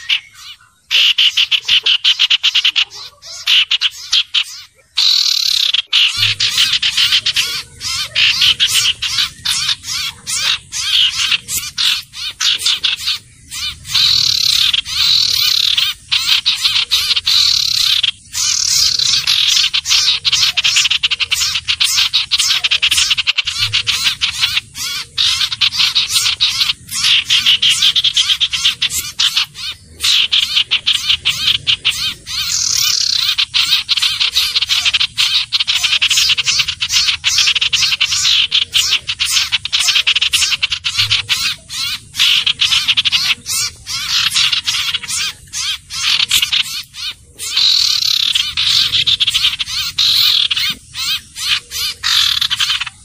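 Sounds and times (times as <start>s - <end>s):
rapid high bird chirps and trills: 0.0s - 53.0s.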